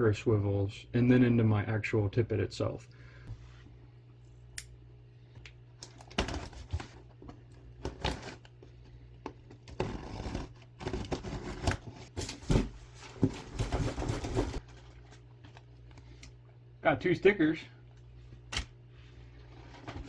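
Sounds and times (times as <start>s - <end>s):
steady low hum: 0.0s - 20.0s
packaging rustling and crinkling: 9.7s - 15.8s.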